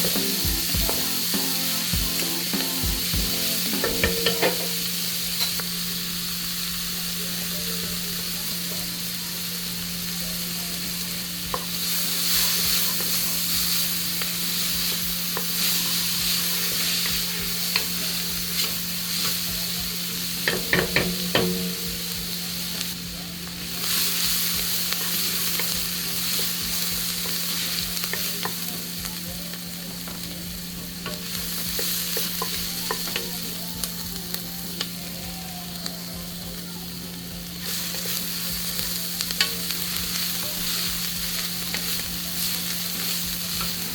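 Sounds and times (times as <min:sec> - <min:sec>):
food sizzling in a pot: 0:00.0 - 0:43.9
knocks against the pot: 0:03.8 - 0:04.8, 0:20.5 - 0:22.0.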